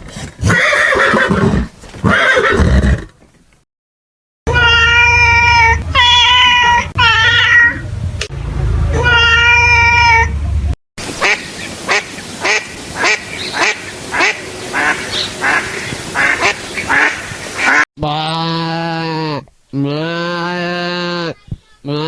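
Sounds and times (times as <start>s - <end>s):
duck quacking: 11.2s - 19.3s.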